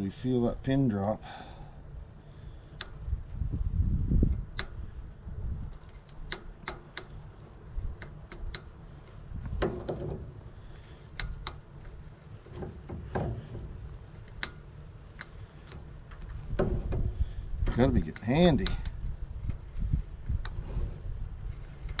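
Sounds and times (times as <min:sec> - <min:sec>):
low rumble: 0:01.6 - 0:22.0
sharp clicks and light knocks: 0:04.2 - 0:04.9, 0:05.7 - 0:20.6, 0:21.5 - 0:22.0.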